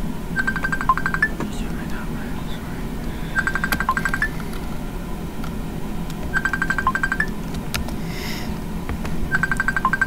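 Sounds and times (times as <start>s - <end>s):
steady low hum: 0.0s - 10.0s
electronic beep pattern: 0.4s - 1.4s, 3.4s - 4.4s, 6.3s - 7.3s, 9.3s - 10.0s.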